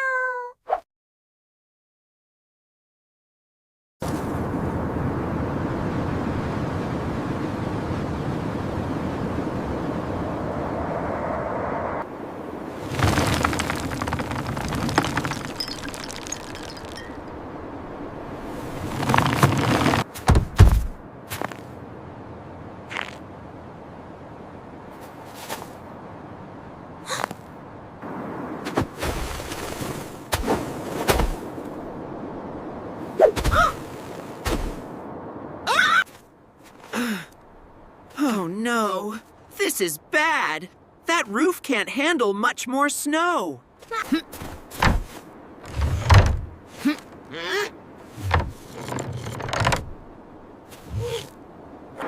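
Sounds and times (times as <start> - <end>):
knocks and thumps: 19.0 - 21.0, 45.7 - 46.6, 48.2 - 50.0.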